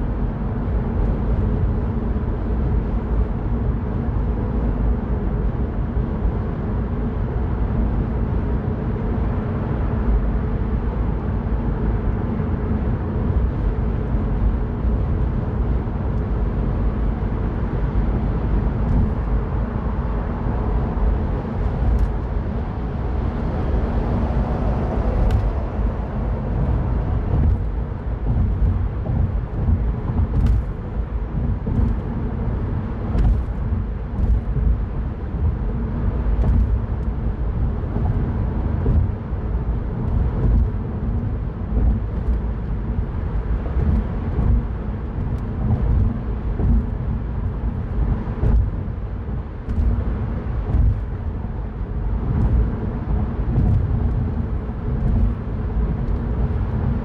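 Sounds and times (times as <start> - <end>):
car engine and tyre rumble: 0.0 - 57.0
wind and road noise hiss: 0.0 - 57.0.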